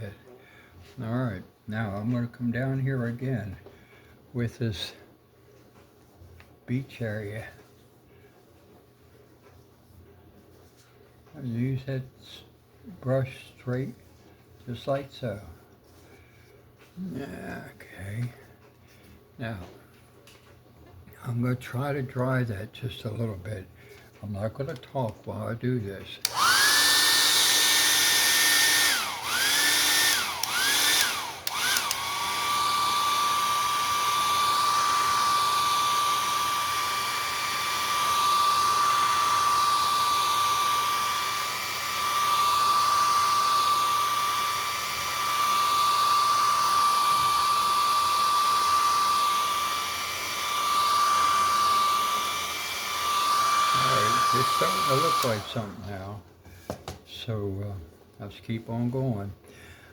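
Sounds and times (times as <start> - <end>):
hair dryer blowing: 26.2 - 56.8.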